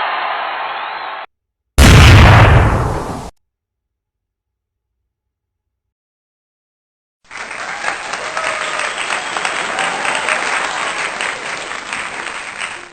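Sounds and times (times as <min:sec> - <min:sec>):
crowd applauding: 0:07.3 - 0:12.9.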